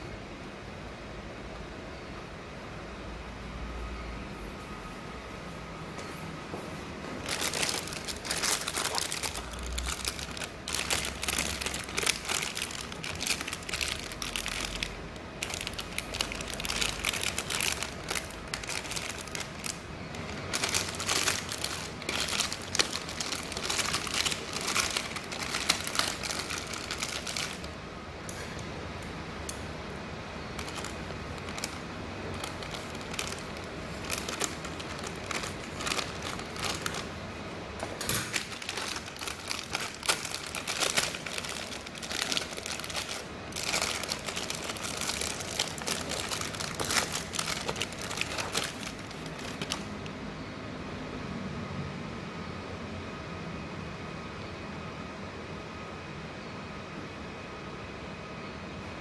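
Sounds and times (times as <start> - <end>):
handling clicks taps and crinkling: 37.8 - 50.1.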